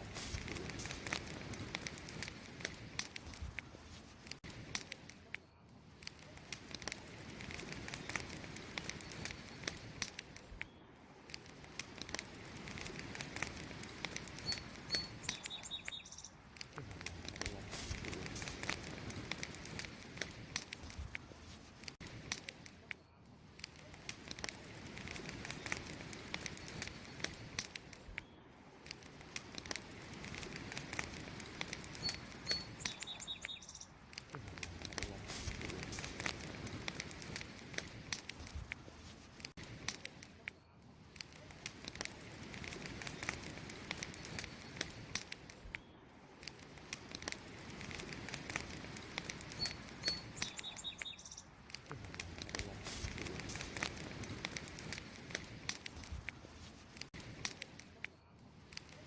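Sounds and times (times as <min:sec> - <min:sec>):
campfire crackling and popping: 0:00.0 - 0:59.0
faint high chirp: 0:10.6 - 0:11.0, 0:14.4 - 0:16.4, 0:31.9 - 0:34.0, 0:49.5 - 0:51.5.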